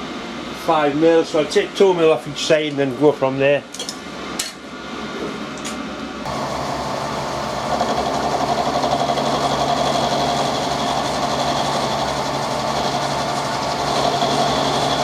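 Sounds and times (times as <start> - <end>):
milling machine motor hum: 6.3 - 15.0
rough metal cutting noise: 6.3 - 15.0.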